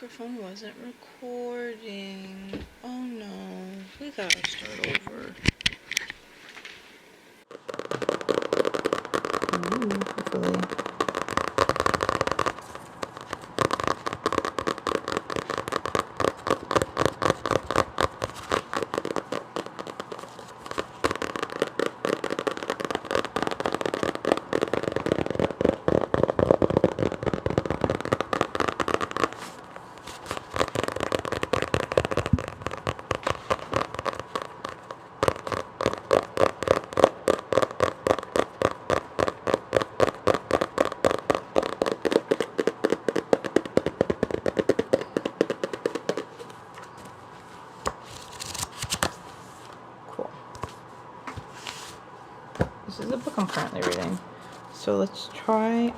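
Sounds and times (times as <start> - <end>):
fingernails tapping on a book: 7.7 - 47.2.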